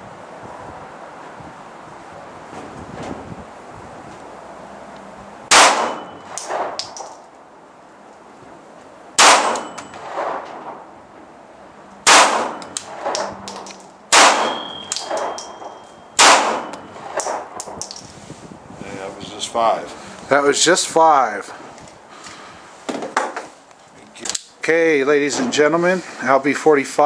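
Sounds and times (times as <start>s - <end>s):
pistol shots: 5.5s - 7.0s, 9.2s - 10.5s, 12.0s - 13.4s, 14.1s - 15.4s, 16.2s - 17.5s
metallic clang with ringing: 5.8s - 7.2s, 9.5s - 10.0s, 13.2s - 16.9s.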